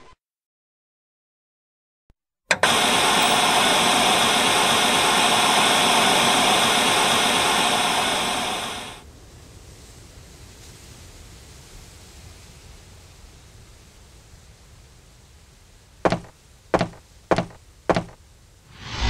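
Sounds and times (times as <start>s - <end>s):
click: 2.5s - 2.8s
machine hiss with steady tones: 2.5s - 9.0s, 16.1s - 18.2s.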